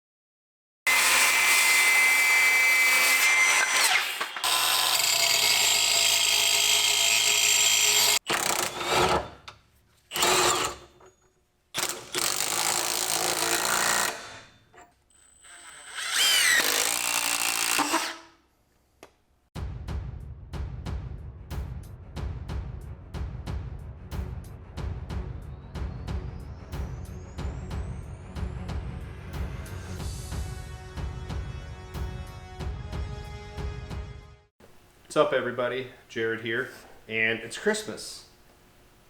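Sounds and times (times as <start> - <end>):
power tools running: 0.9 - 11.2, 11.8 - 18.3
tool spinning up with rising whine: 11.8 - 18.3.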